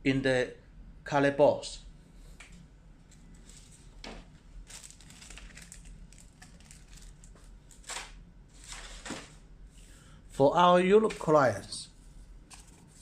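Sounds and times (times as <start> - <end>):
packaging rustling and crinkling: 3.1 - 9.4.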